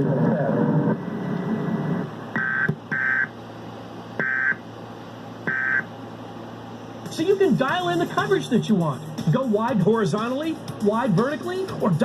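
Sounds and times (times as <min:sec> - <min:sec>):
short electronic tone bursts: 0:02.4 - 0:03.3, 0:04.2 - 0:04.6, 0:05.4 - 0:05.9.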